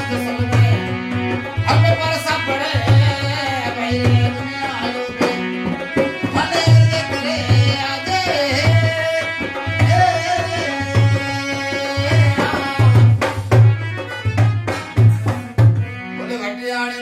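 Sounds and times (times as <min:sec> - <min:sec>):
hand drums beating: 0:00.0 - 0:16.2
person singing: 0:06.2 - 0:13.3.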